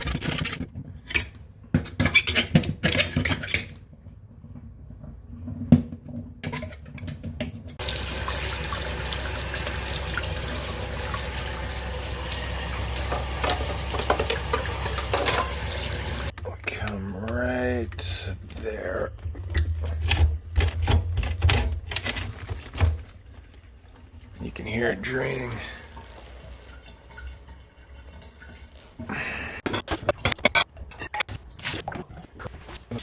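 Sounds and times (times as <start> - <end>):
tap water running into sink: 7.8 - 17.6
clatter and knocks in sink drain: 12.9 - 17.4, 19.2 - 23.6.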